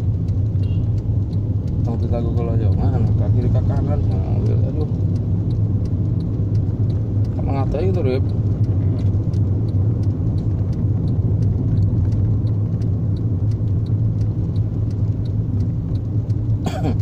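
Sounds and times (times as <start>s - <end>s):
faint light ticking: 0.0s - 17.0s
vehicle engine running: 0.0s - 17.0s.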